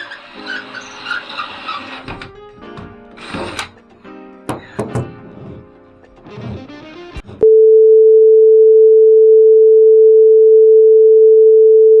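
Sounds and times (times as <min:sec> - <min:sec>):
background music: 0:00.0 - 0:07.4.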